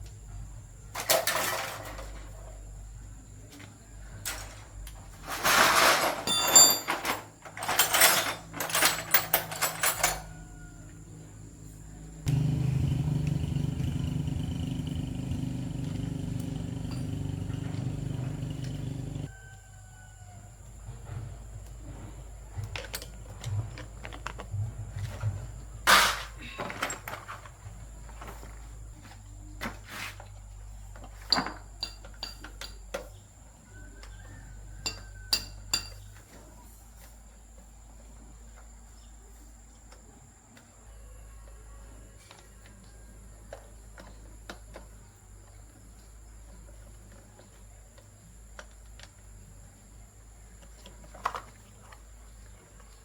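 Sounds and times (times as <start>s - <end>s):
tools and parts clattering: 0.9s - 2.5s, 4.2s - 10.4s, 12.3s - 19.3s, 22.6s - 28.9s, 31.0s - 33.2s
small electric motor humming: 12.3s - 19.3s.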